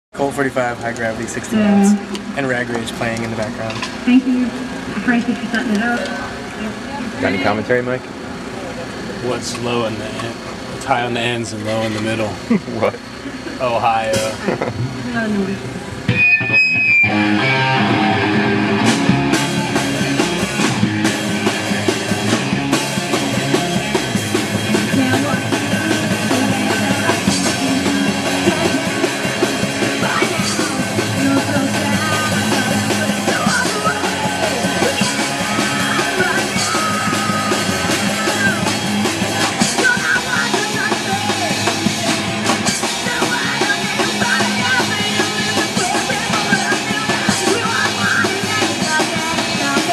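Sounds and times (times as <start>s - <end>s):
driving drum kit: 0.1s - 49.9s
electric guitar: 0.2s - 10.8s, 11.6s - 49.9s
loud rock music: 0.2s - 11.4s, 12.1s - 49.9s
person singing: 24.8s - 38.8s, 42.8s - 49.9s.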